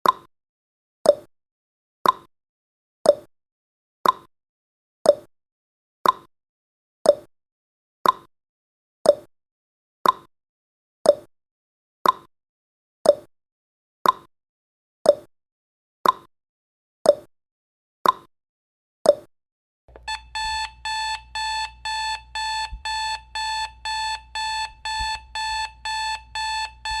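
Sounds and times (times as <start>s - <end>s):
alarm clock beeping: 19.9s - 27.0s
timer ticking: 19.9s - 27.0s.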